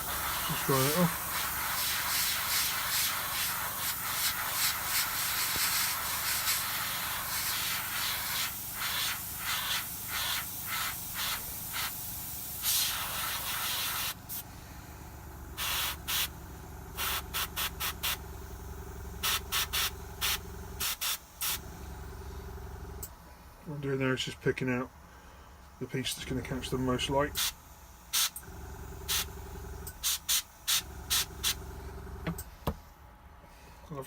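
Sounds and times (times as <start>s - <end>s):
airbrush hissing: 0.0s - 14.9s, 15.6s - 16.4s, 17.0s - 18.2s, 19.2s - 21.6s, 26.5s - 28.3s, 29.1s - 29.3s, 30.0s - 31.6s.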